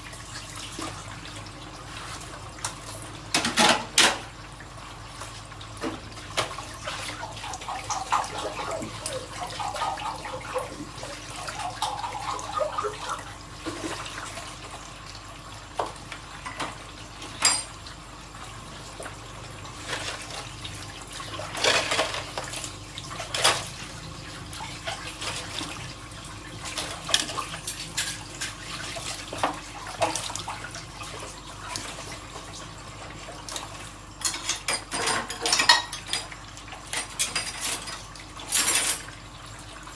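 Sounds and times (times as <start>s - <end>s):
tap water running into sink: 5.2s - 18.0s
dishes and cutlery clinking: 34.2s - 36.3s.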